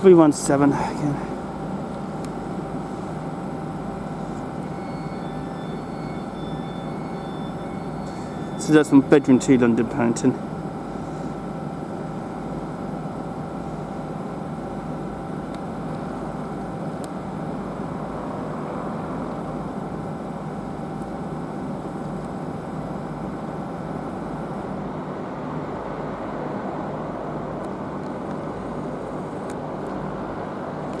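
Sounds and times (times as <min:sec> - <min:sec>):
train rumbling: 0:00.0 - 0:11.3
faint high whine: 0:00.0 - 0:31.0.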